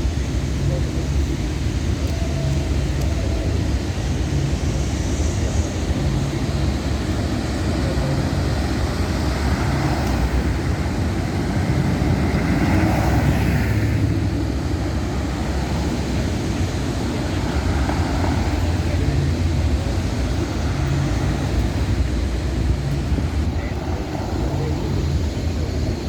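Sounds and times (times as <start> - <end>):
low rumble of passing traffic: 0.0 - 26.0.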